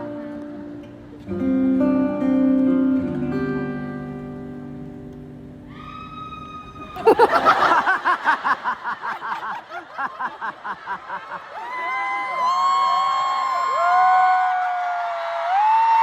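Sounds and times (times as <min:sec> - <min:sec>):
crowd screaming: 0:05.7 - 0:16.0
person laughing hard: 0:07.0 - 0:12.0.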